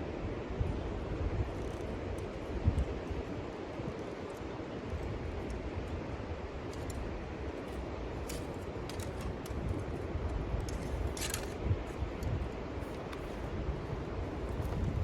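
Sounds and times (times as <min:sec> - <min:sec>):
wind rumble on microphone: 0:00.0 - 0:15.0
light clicks of camping gear: 0:01.4 - 0:15.0
camping gear scraping: 0:10.6 - 0:12.2.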